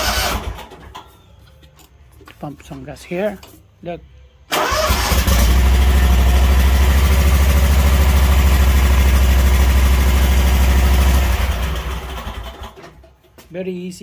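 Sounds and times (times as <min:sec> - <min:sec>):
mower engine running: 0:04.5 - 0:12.8.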